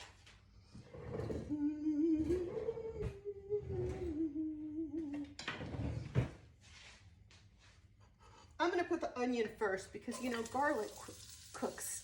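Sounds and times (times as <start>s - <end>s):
woman humming: 1.4s - 5.4s.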